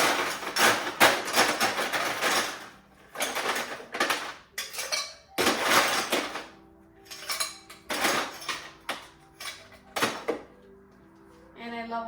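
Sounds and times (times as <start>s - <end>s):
ice cubes clattering into glass: 0.0s - 6.5s.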